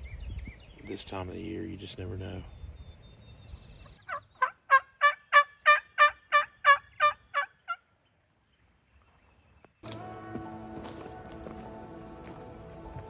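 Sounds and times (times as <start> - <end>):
turkey yelps: 4.0 - 7.8
music: 9.8 - 13.0.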